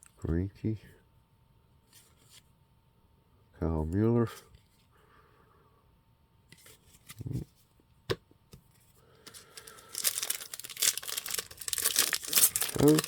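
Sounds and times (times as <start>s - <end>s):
foil wrapper tearing and crinkling: 9.3s - 13.0s.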